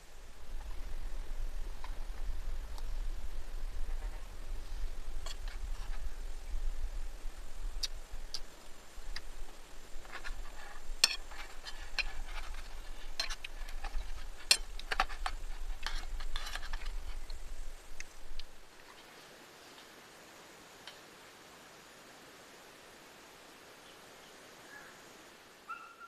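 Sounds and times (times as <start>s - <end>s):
steady low rumble: 0.0s - 18.7s.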